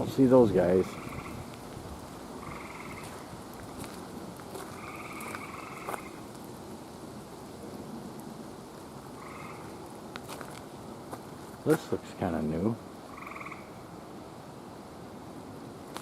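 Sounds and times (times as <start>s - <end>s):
tree frogs trilling: 0.0s - 6.7s, 8.8s - 11.7s, 12.7s - 14.4s.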